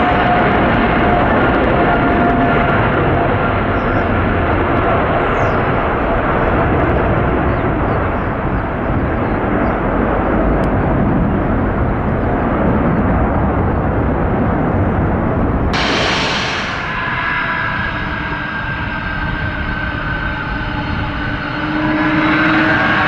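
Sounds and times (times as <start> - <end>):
airplane engines roaring: 0.0 - 23.0
bright hiss: 15.8 - 18.9.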